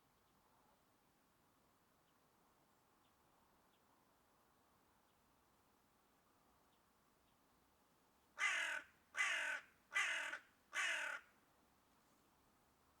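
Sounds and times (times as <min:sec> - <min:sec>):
crow cawing: 0:08.4 - 0:11.3.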